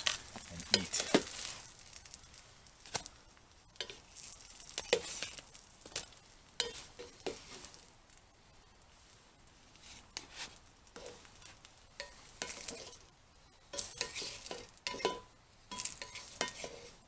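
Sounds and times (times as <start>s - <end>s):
food sizzling in a pan: 0.0s - 17.0s.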